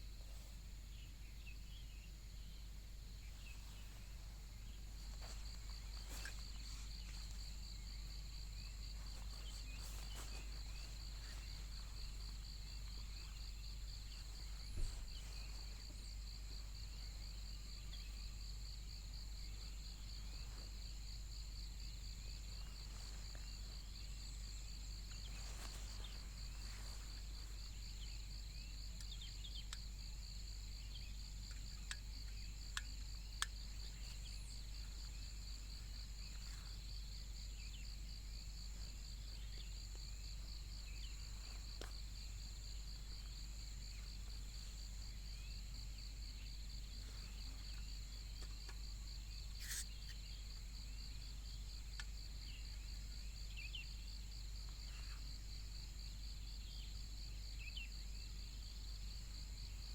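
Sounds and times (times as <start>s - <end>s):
crickets trilling: 0.0s - 59.9s
soft thump: 14.6s - 15.3s.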